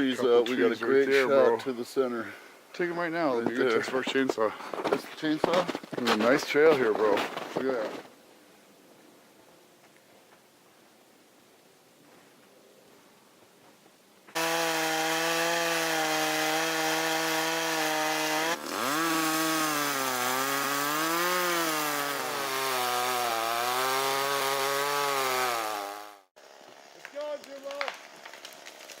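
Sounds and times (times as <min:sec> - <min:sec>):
chainsaw cutting wood: 0:14.3 - 0:27.1.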